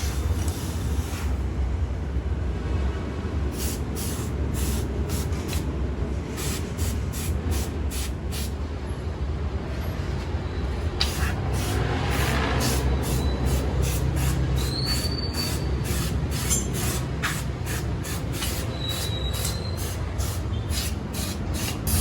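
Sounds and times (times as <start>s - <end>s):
short sharp bursts: 11.0s - 22.0s.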